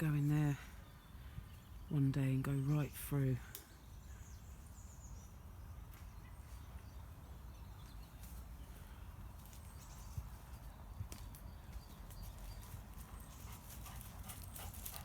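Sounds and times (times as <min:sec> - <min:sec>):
faint birds chirping: 0:00.0 - 0:15.0
light rustles and ticks: 0:07.8 - 0:15.0.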